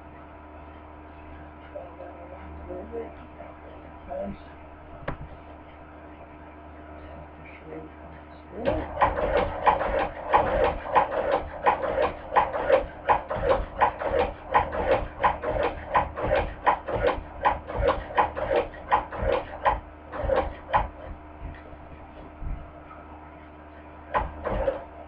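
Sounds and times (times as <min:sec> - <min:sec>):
sewing machine clacking: 0:08.6 - 0:21.1.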